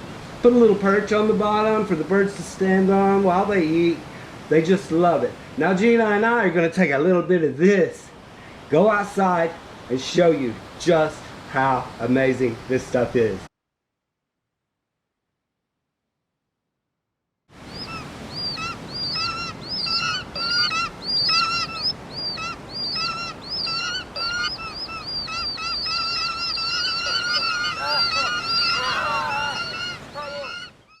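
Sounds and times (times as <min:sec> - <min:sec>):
geese honking: 0:17.7 - 0:31.0.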